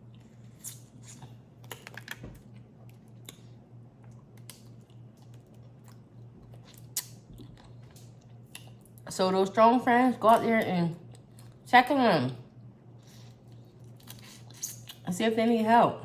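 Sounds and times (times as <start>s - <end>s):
steady low hum: 0.0s - 16.0s
chewing: 0.1s - 9.0s.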